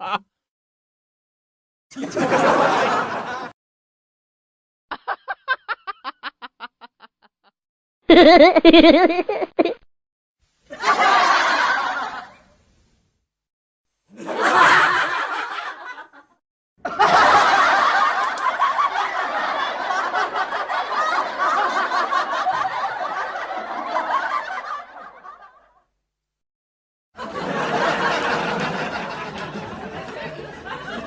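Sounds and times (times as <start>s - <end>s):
recorded laughter: 1.9s - 3.5s, 4.9s - 7.5s, 8.1s - 9.8s, 14.1s - 25.7s, 27.2s - 31.0s.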